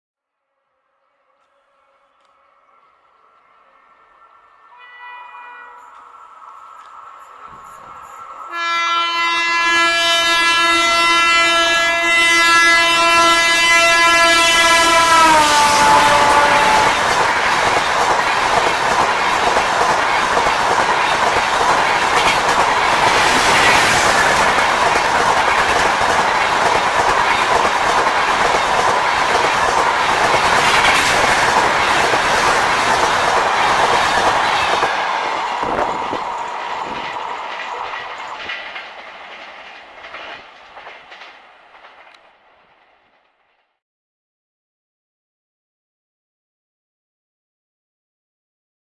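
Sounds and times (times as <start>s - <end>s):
train horn: 0.4s - 6.1s, 8.4s - 17.5s
train coaches rushing past: 1.5s - 43.5s
wheels clattering over rail joints: 16.8s - 43.3s.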